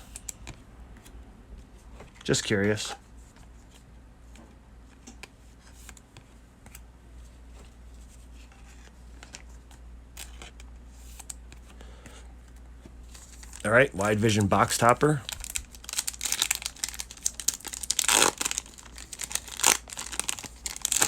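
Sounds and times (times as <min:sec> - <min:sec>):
low steady hum: 0:00.0 - 0:21.0
cards clicking and rustling: 0:13.1 - 0:21.0.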